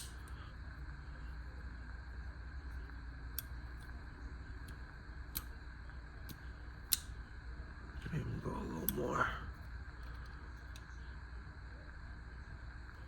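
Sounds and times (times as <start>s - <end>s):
pocket knife blade clicking: 6.3s - 7.1s.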